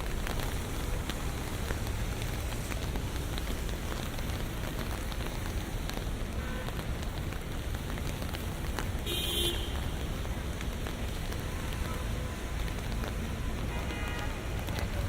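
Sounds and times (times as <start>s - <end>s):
low traffic rumble: 0.0s - 15.0s
rain falling: 0.0s - 15.0s
raindrops ticking: 0.0s - 15.0s.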